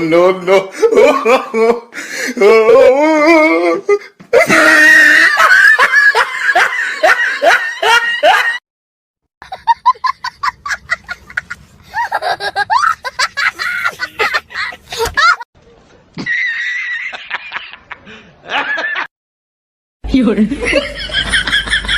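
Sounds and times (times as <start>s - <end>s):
choppy laugh: 4.4s - 8.6s, 9.4s - 15.4s, 20.6s - 21.9s
loud laugh: 4.4s - 8.6s, 9.4s - 15.4s, 16.2s - 19.1s, 20.6s - 21.9s.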